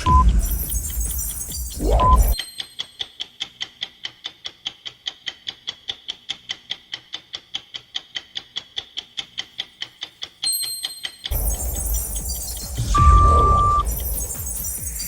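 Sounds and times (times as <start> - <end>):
high steady tone: 10.7 - 15.0.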